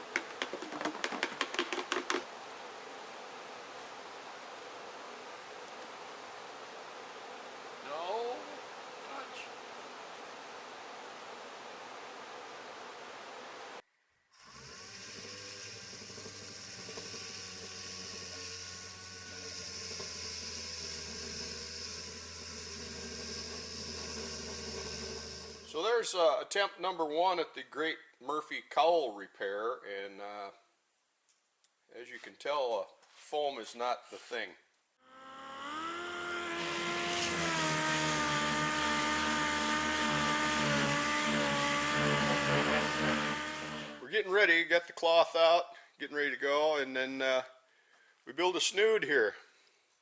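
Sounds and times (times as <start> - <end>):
constant hiss: 0.0 - 37.2, 37.9 - 50.0
hiss: 14.4 - 25.8
low mechanical hum: 14.4 - 25.8, 35.1 - 44.1.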